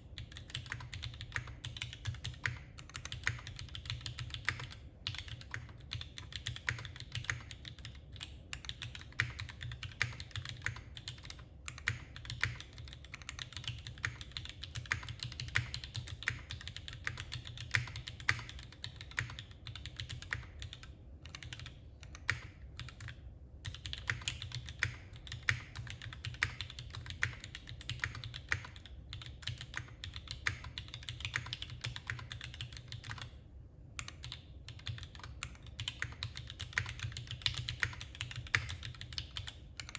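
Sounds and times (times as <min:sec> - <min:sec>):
fast typing on mechanical keyboard: 0:00.1 - 0:33.4, 0:34.0 - 0:39.9.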